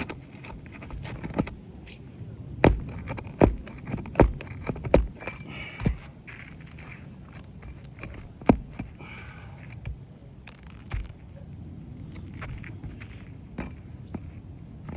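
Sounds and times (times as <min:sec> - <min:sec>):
light scraping and ticking: 0:00.0 - 0:14.9
tool knocking on shingle roof: 0:02.6 - 0:06.1.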